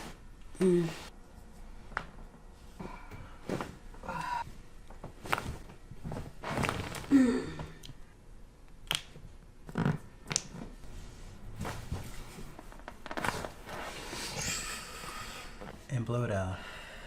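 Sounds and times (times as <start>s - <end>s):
person groaning: 0.6s - 1.1s, 4.0s - 4.5s, 7.1s - 7.8s.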